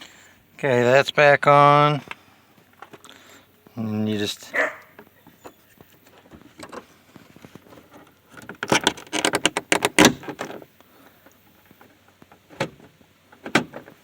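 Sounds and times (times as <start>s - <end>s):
plastic trim clicking and rattling: 7.8s - 10.6s.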